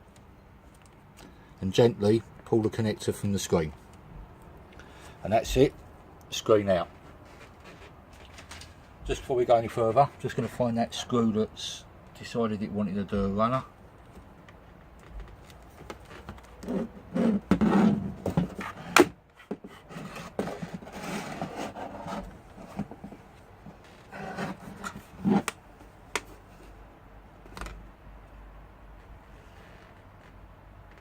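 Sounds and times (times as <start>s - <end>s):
hands rummaging over desk: 15.4s - 25.5s.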